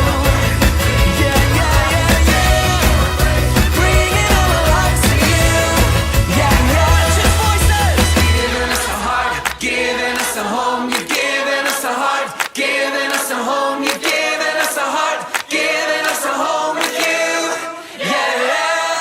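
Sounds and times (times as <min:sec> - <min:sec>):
choir singing in harmony: 0:00.0 - 0:19.0.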